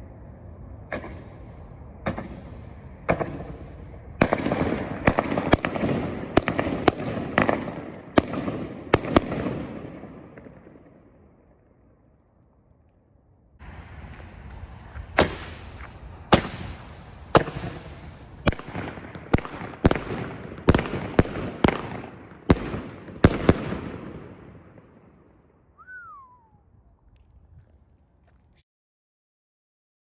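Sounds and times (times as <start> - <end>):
firework bangs: 0.8 - 11.2, 13.6 - 25.3
fizzing crackle of strobe: 15.2 - 18.5.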